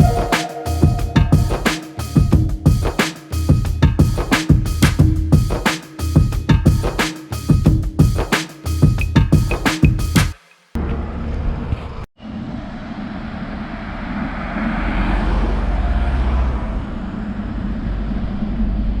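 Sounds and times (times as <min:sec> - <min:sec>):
vehicle passing: 0:13.0 - 0:18.8.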